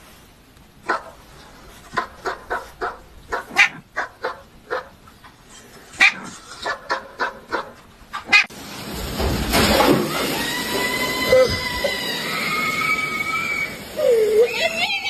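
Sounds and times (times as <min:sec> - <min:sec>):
dog barking: 0:00.9 - 0:01.2, 0:02.0 - 0:05.0, 0:06.0 - 0:08.5.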